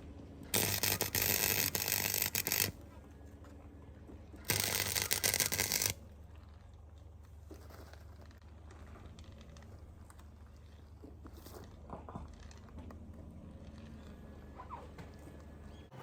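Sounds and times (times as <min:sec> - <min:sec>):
low buzz: 0:00.5 - 0:02.8, 0:04.5 - 0:06.0
welder arc crackling: 0:00.5 - 0:02.8, 0:04.4 - 0:06.0.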